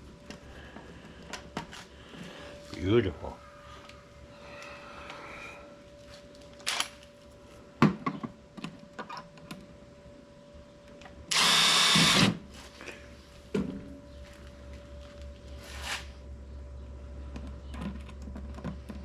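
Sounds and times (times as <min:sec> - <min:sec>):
power drill driving screw: 0:11.3 - 0:12.4.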